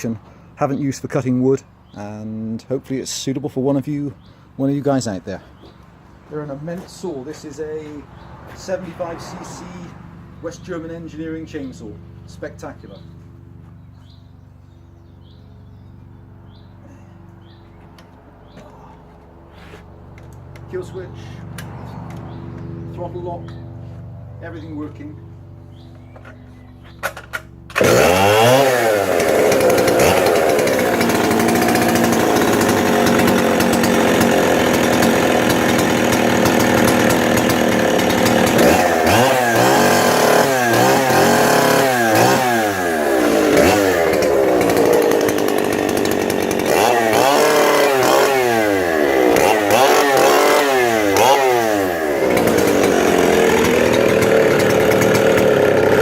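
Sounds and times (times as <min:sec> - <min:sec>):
chainsaw starting and revving: 0:27.7 - 0:56.0.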